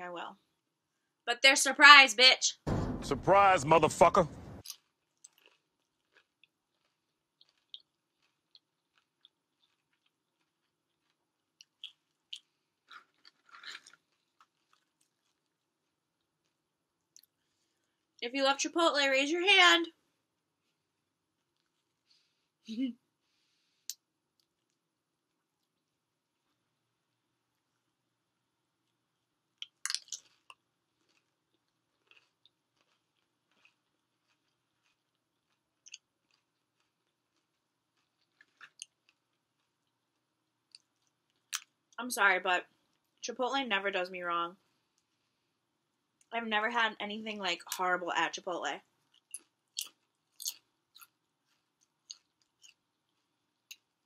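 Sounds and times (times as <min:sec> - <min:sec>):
person chewing food: 0:04.6 - 0:18.1, 0:20.6 - 0:22.4, 0:23.4 - 0:42.0, 0:49.0 - 0:54.0.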